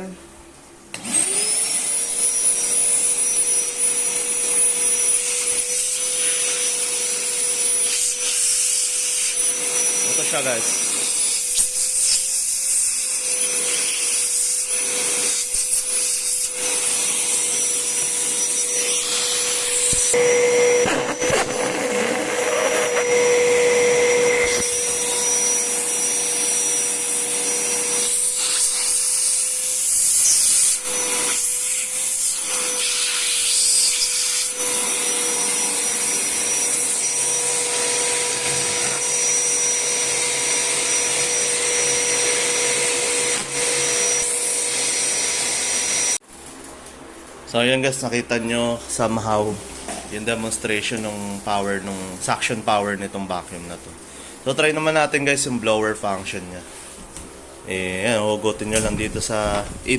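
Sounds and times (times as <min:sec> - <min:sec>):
vacuum cleaner running: 0:00.0 - 0:46.5.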